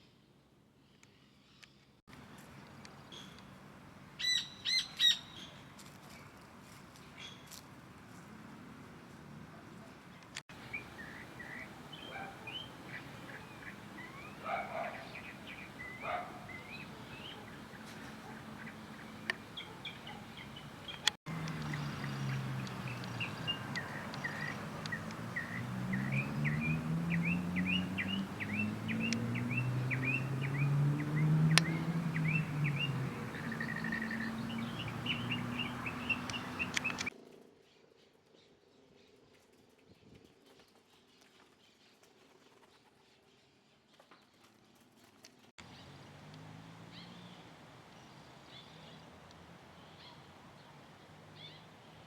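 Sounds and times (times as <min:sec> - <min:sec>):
birds chirping: 0:10.1 - 0:37.1, 0:45.6 - 0:52.0.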